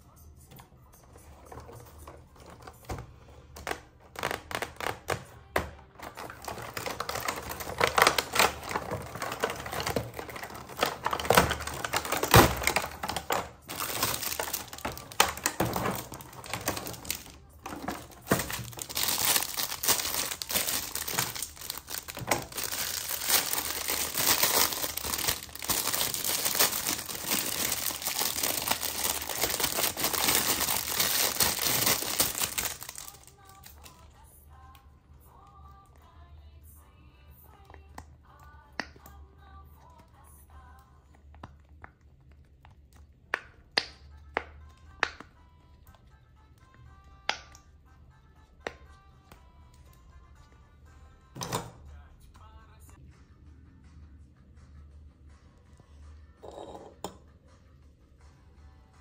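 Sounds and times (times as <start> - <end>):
packaging crinkling and rustling: 3.6 - 34.0.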